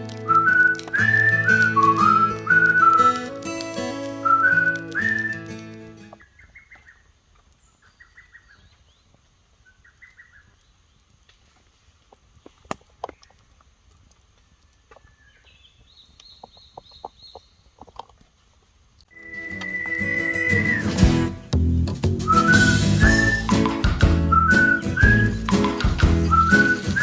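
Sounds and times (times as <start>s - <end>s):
sharp clicks: 0.0s - 6.2s
birds trilling and chirping: 6.1s - 11.2s, 14.9s - 17.9s.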